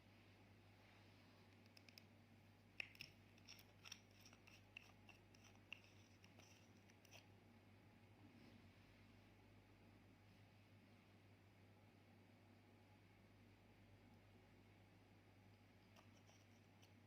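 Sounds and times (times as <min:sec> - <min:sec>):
small clicks and scratchy ticks: 0:01.5 - 0:02.2, 0:02.8 - 0:07.3, 0:15.8 - 0:17.0.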